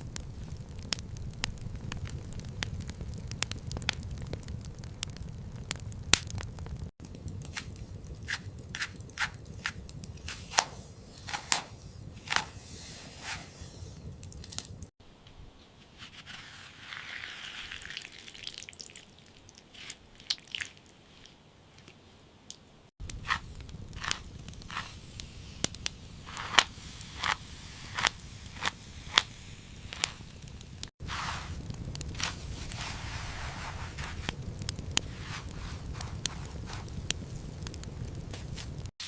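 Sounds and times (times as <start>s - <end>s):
crackling with clicks: 0.0s - 12.6s, 13.2s - 14.9s, 21.8s - 39.0s
crunching snaps: 0.0s - 15.4s, 16.0s - 39.0s
soft hiss: 7.0s - 18.3s, 22.0s - 39.0s.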